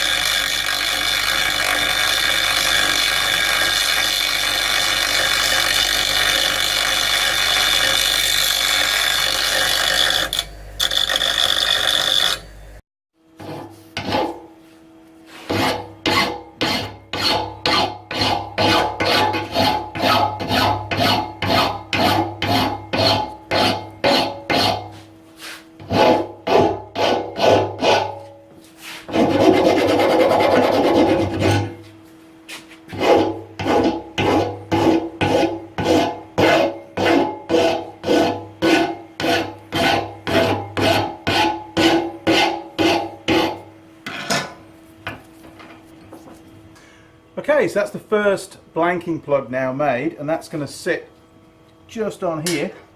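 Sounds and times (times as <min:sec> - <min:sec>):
metal file rasping on steel: 0:00.0 - 0:12.5, 0:13.4 - 0:14.5, 0:15.3 - 0:31.8, 0:32.9 - 0:43.7
steady low hum: 0:00.0 - 0:52.9.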